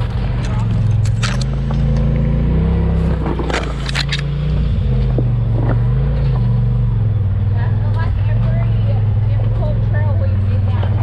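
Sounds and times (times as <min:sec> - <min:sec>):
knocks and scrapes: 0:00.0 - 0:06.8
engine running at low revs: 0:00.0 - 0:11.0.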